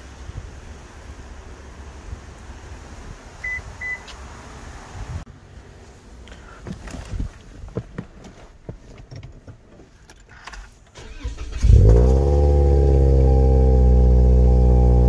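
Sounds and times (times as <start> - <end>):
car engine starting and idling: 9.0 - 15.0.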